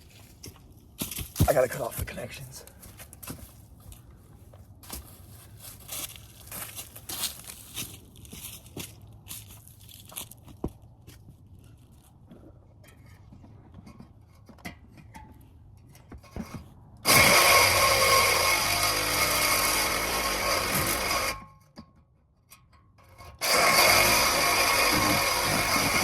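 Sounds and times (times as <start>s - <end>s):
reciprocating saw cutting metal: 17.0s - 21.5s, 23.2s - 26.0s.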